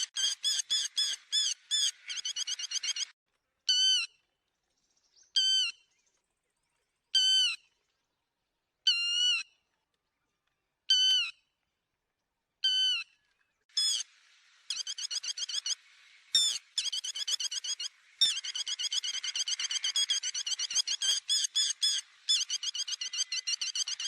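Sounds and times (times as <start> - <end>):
lapwing calls: 13.8 - 14.1, 14.7 - 24.0.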